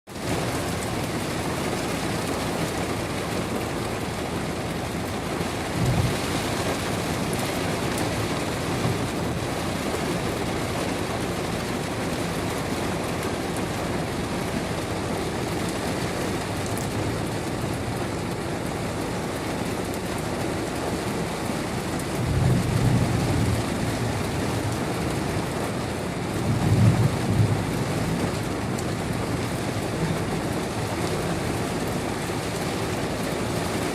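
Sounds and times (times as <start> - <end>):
heavy rain hiss: 0.1 - 33.9
low rumbles: 5.6 - 9.6.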